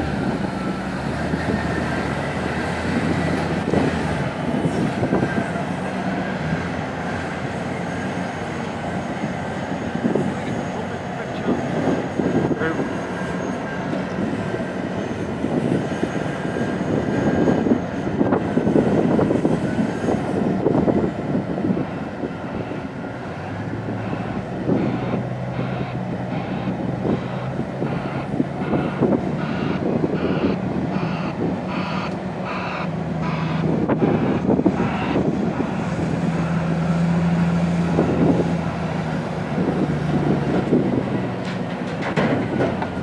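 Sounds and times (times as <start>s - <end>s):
excavator diesel engines under load: 0.0s - 43.0s
steady engine drone: 0.0s - 43.0s
regular high pulses: 22.5s - 35.2s.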